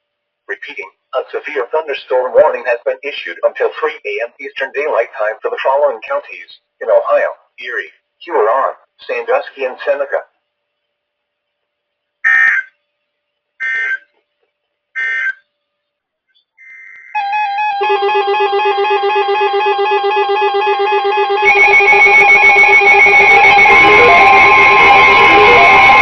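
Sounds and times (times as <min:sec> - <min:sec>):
beeping and warbling alarms: 0:16.6 - 0:26.0
screeching data bursts: 0:16.6 - 0:26.0
steady alarm tone: 0:17.0 - 0:26.0.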